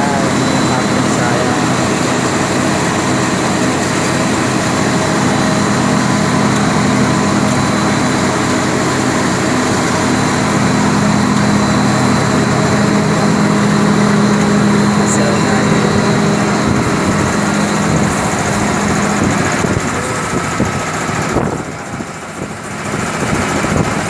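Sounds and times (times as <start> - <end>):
wire-making machine hum and clatter: 0.0 - 24.0.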